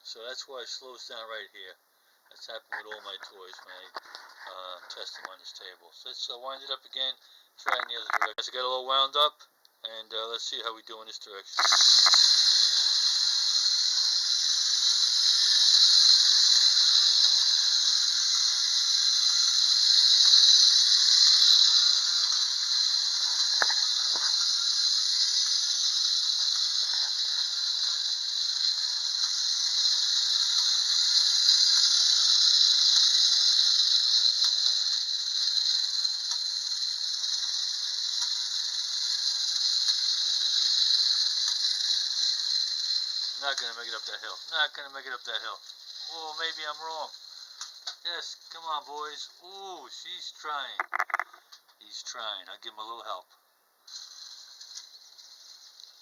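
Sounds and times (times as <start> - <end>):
clockwork toy motor whirring: 11.6 - 48.2.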